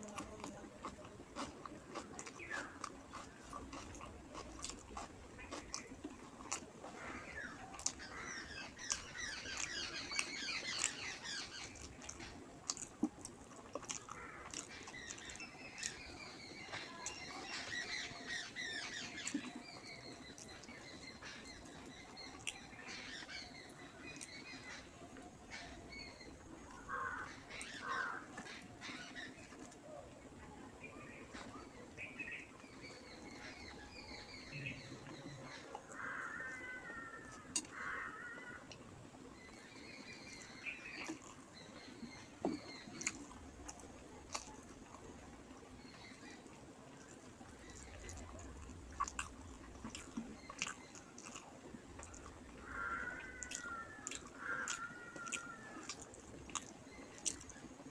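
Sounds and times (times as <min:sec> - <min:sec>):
person chewing: 0:00.0 - 0:16.1, 0:19.2 - 0:20.8, 0:21.7 - 0:22.6, 0:40.9 - 0:45.6, 0:46.2 - 0:57.9
small birds chirping: 0:00.0 - 0:57.9
wet mouth clicks and smacks: 0:53.4 - 0:57.6.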